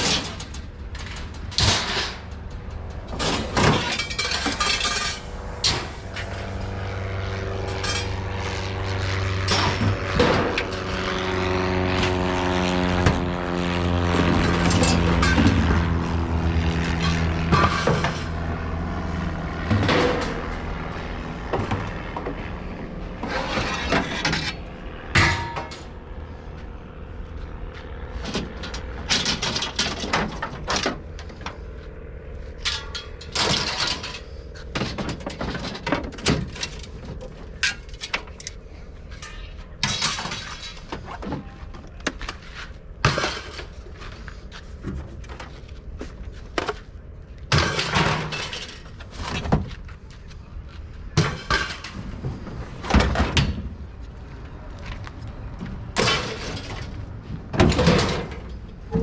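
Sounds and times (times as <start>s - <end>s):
scrap metal clattering: 0.0s - 2.4s, 3.1s - 6.5s, 32.7s - 38.4s, 47.5s - 49.6s, 56.0s - 59.0s
engine running: 0.0s - 59.0s.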